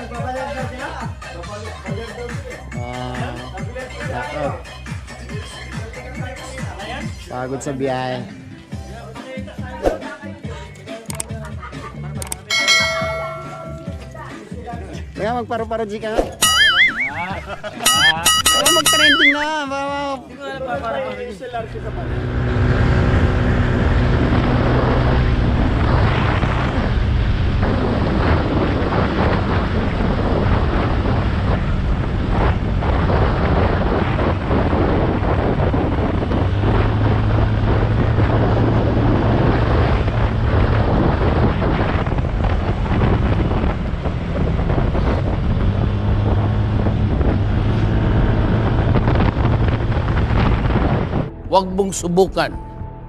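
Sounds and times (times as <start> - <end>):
motorcycle engine drone: 21.5 - 51.6
wind rushing over microphone: 21.7 - 51.6.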